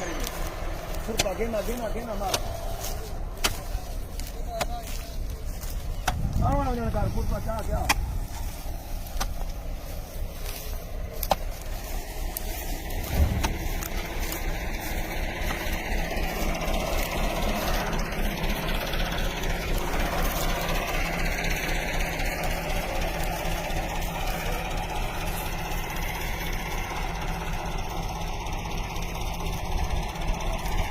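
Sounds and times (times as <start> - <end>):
tractor engine running: 0.0 - 30.9
thump: 13.1 - 13.6.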